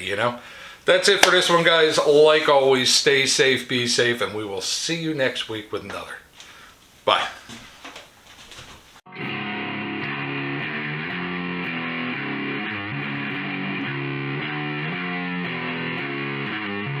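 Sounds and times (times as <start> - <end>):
guitar music with steady beat: 9.1 - 17.0.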